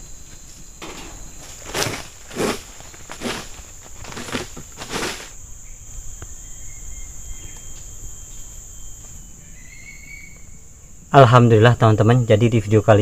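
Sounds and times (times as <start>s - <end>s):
crickets droning: 0.0s - 13.0s
step or rustle: 0.8s - 5.4s.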